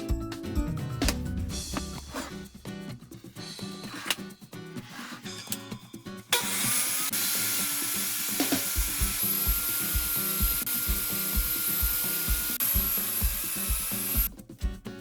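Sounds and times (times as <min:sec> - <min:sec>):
background music with steady beat: 0:00.0 - 0:15.0
power tool whining: 0:06.3 - 0:14.3.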